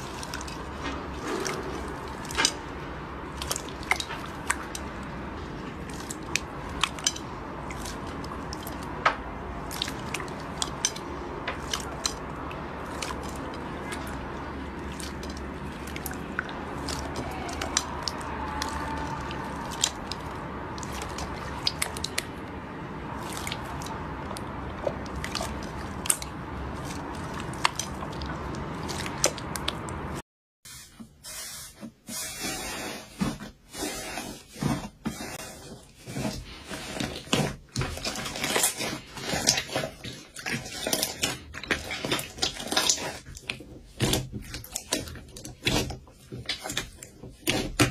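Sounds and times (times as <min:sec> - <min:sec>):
slime squished with wet pops: 0:37.0 - 0:47.9.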